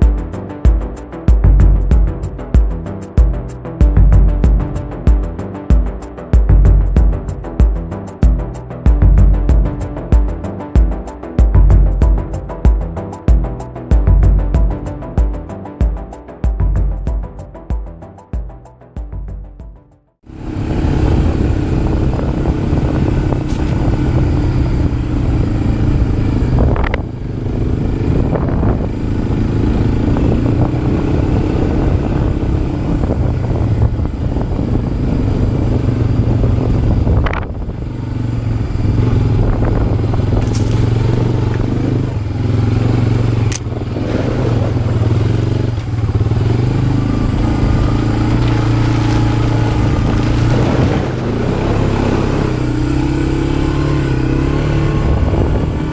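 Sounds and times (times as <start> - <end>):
atv engine revving: 20.3 - 55.9.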